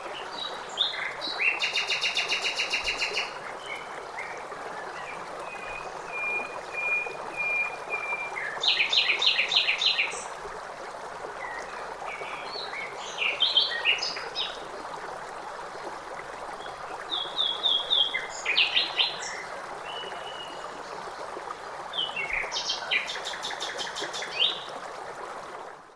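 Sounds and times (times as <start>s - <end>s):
flowing stream rushing: 0.0s - 25.9s.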